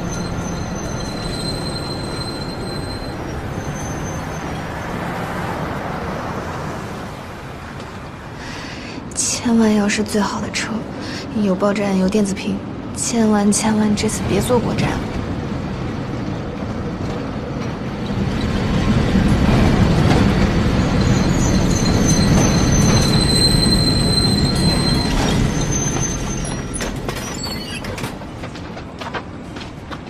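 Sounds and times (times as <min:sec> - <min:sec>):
wheel squeal: 0:00.0 - 0:08.0, 0:18.0 - 0:28.3
rail car running on tracks: 0:00.0 - 0:30.0.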